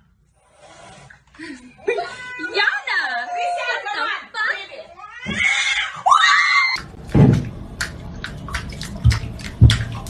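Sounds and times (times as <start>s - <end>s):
cat meowing: 5.0s - 6.0s.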